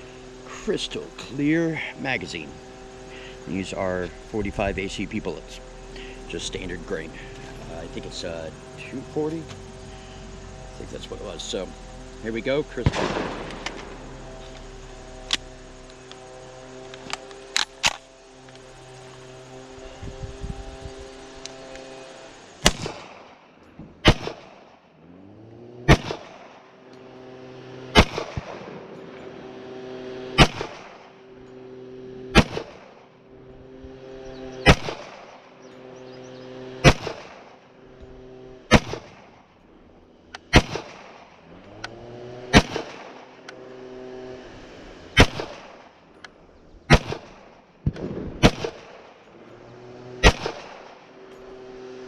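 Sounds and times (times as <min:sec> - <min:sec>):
gunshots: 0:12.8 - 0:14.4, 0:22.6 - 0:23.3, 0:24.0 - 0:24.6, 0:25.9 - 0:26.6, 0:27.9 - 0:29.0, 0:30.4 - 0:31.1, 0:32.3 - 0:32.8, 0:34.6 - 0:35.4, 0:36.8 - 0:37.5, 0:38.7 - 0:39.3, 0:40.5 - 0:41.2, 0:42.5 - 0:43.2, 0:45.2 - 0:45.9, 0:46.9 - 0:49.1, 0:50.2 - 0:51.0.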